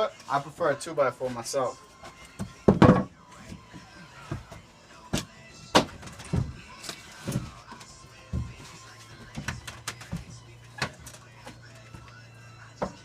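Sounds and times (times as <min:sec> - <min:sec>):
wooden knocks and thumps: 0:02.4 - 0:03.6.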